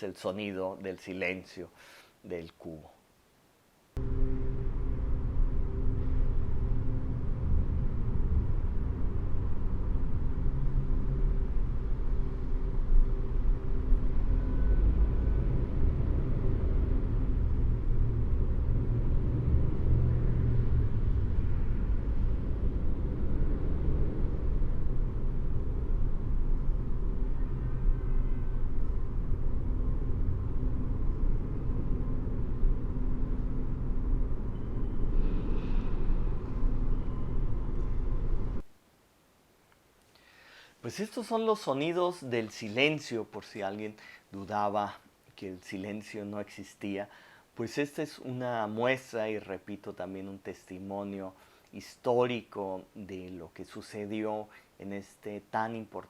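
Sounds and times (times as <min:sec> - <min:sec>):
faint humming tones: 0:03.0 - 0:55.4
low hall rumble: 0:04.0 - 0:38.7.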